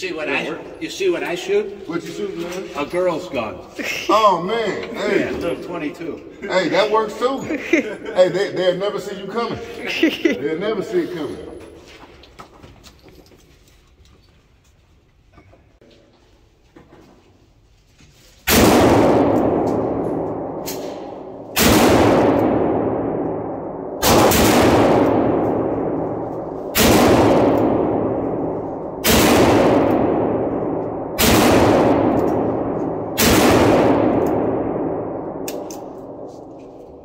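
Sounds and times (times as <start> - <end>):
handgun shots with echo: 18.5 - 37.0.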